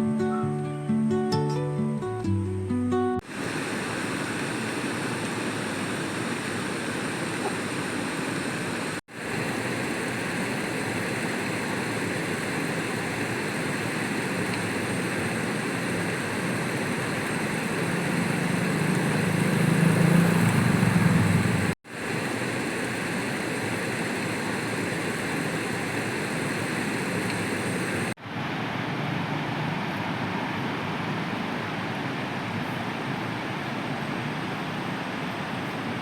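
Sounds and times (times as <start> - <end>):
acoustic guitar music: 0.0 - 3.2
rushing outdoor noise: 3.2 - 36.0.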